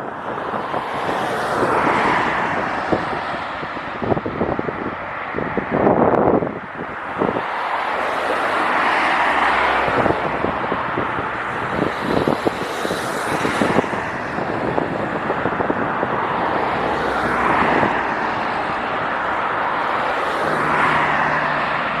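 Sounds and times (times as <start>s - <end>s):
wind buffeting microphone: 0.0s - 22.0s.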